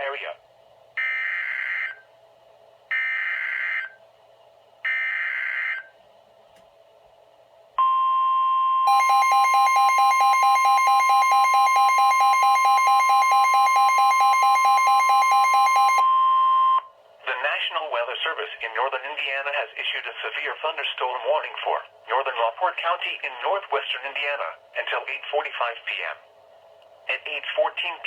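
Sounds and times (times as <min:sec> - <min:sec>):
steady warning alarm tone: 0:01.0 - 0:02.0, 0:02.9 - 0:04.0, 0:04.8 - 0:05.9, 0:07.8 - 0:16.9
rapid pulsing beep: 0:08.8 - 0:16.9.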